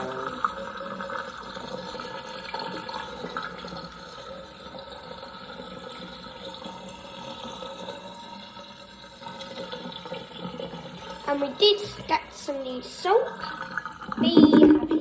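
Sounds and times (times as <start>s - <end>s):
water running and splashing: 0.0s - 15.0s.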